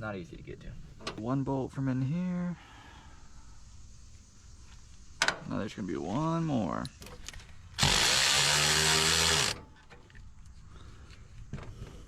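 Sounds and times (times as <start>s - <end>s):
cordless power tool running: 7.8s - 9.6s.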